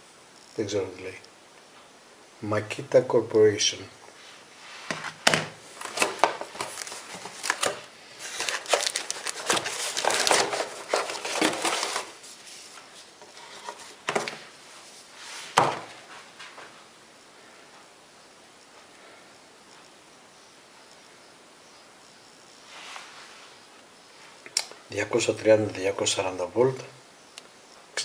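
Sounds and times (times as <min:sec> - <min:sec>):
packaging rustling: 0:04.9 - 0:14.6.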